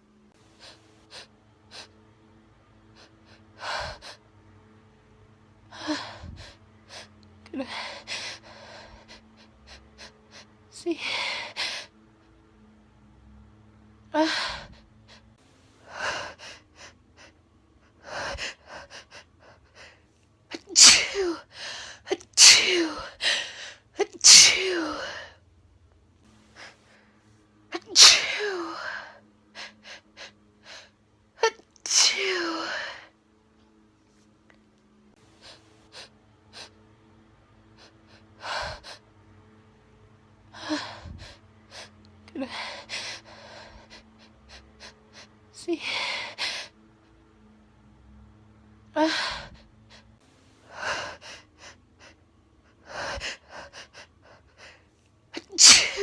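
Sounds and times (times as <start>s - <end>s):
woman sneezing: 55.4s - 56.0s.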